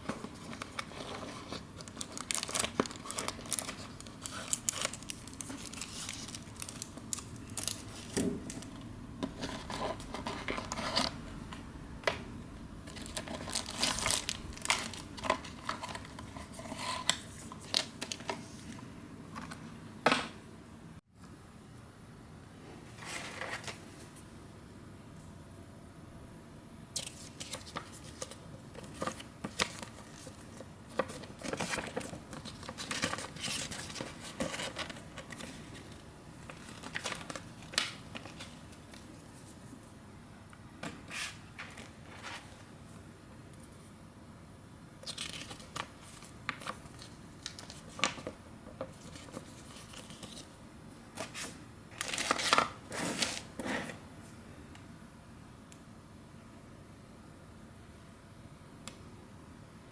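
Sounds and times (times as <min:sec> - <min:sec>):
packaging crinkling and rustling: 0:00.0 - 0:11.2, 0:12.9 - 0:18.8, 0:27.0 - 0:39.6, 0:45.0 - 0:50.6, 0:51.2 - 0:54.0
packaging tearing: 0:00.5 - 0:07.8.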